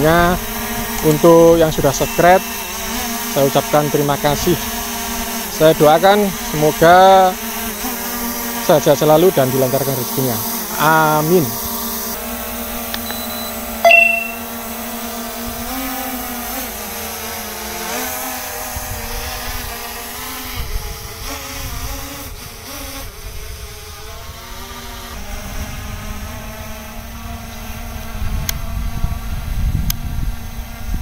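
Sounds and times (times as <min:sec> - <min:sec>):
drone propellers buzzing: 0:00.0 - 0:31.0
short loud beep: 0:13.0 - 0:14.4
wind rumble on microphone: 0:18.7 - 0:19.8, 0:20.5 - 0:24.5, 0:25.1 - 0:31.0.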